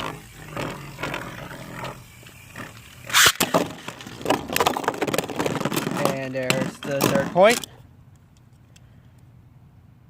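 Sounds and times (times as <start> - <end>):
spinning tops whirring and grinding: 0.0 - 7.5.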